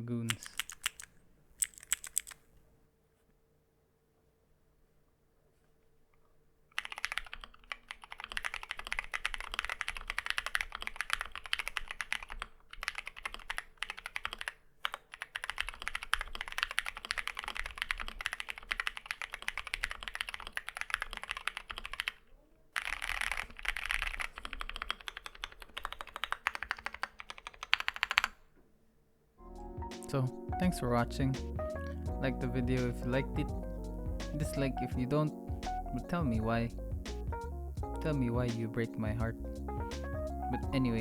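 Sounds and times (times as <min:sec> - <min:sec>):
fast mechanical keyboard typing: 0:00.2 - 0:02.4, 0:06.8 - 0:22.2, 0:22.8 - 0:28.4.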